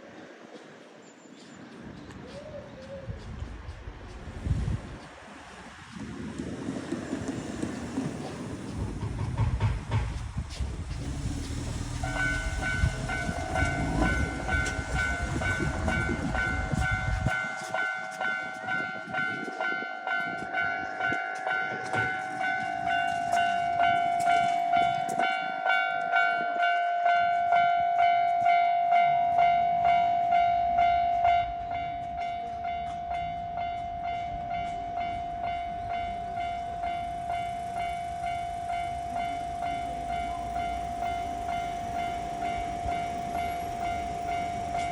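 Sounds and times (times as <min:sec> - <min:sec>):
train rumbling and clattering: 0:00.0 - 0:44.9
crossing warning bell clanging: 0:10.9 - 0:44.9.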